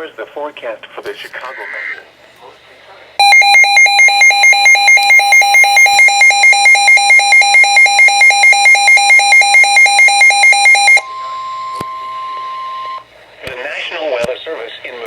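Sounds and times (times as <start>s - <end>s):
rapid electronic alarm beeping: 3.2s - 13.0s.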